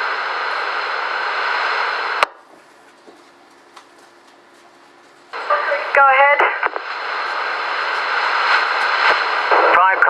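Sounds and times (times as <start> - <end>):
scanner radio hiss: 0.0 - 2.2, 5.3 - 10.0
radio squelch click: 5.4 - 10.0.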